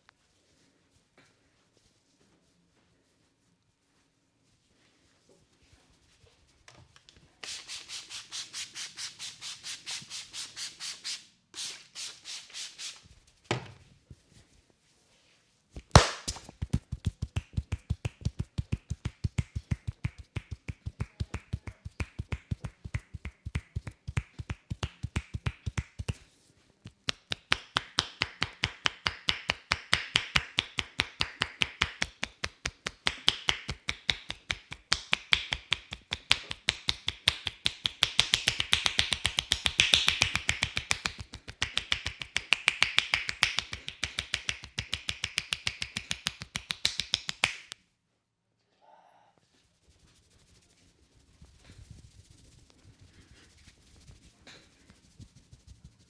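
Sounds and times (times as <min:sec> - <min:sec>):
hands rubbing skin: 0:07.4 - 0:13.0, 0:15.8 - 0:47.8
rapid rhythmic hand strikes: 0:15.8 - 0:26.2, 0:26.8 - 0:47.8.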